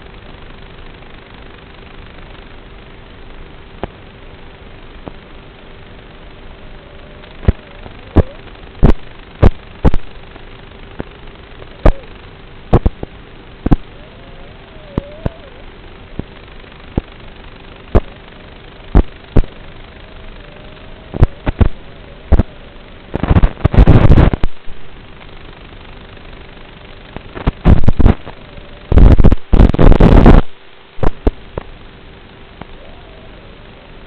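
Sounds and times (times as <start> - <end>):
crackling bursts: 0.0 - 34.0
quadcopter motor hum: 0.0 - 34.0
sharp cracks: 12.7 - 14.0, 21.1 - 24.6.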